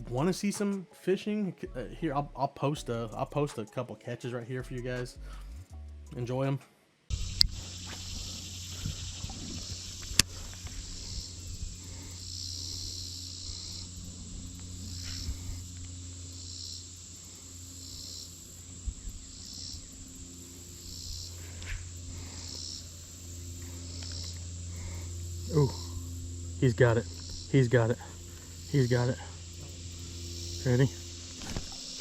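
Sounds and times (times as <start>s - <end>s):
insects chirping: 7.1s - 32.0s
steady low hum: 7.1s - 32.0s.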